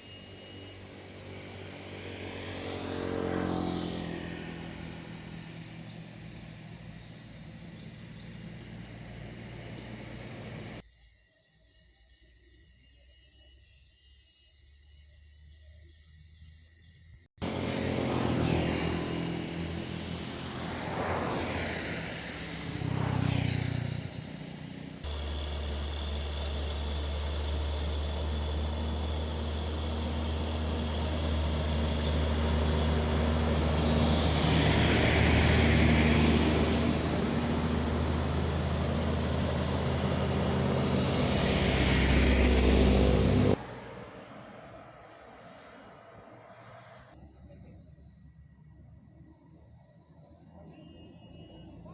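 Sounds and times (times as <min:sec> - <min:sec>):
low engine drone: 0:00.0 - 0:10.8, 0:17.4 - 0:45.8
passing vehicle engines: 0:00.0 - 0:10.8, 0:17.4 - 0:47.6.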